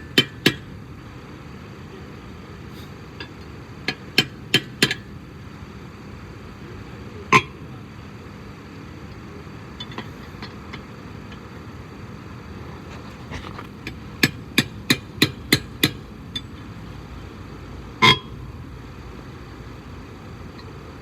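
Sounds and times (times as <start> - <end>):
sharp metal taps: 0.1 - 0.7, 3.2 - 5.1, 13.3 - 16.5, 18.0 - 18.4.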